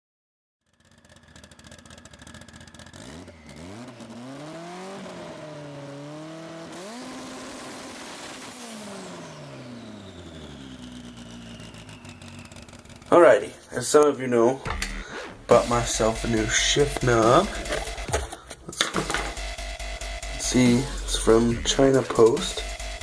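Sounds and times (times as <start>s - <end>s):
car engine revving and idling: 0.8s - 13.1s, 14.7s - 23.0s
high whistle: 10.1s - 13.0s.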